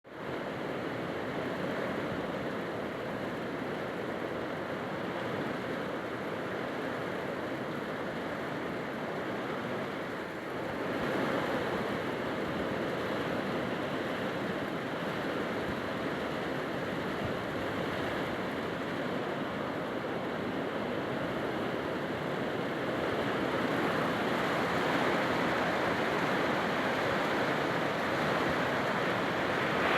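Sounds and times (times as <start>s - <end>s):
storm rushing noise: 24.9s - 29.9s.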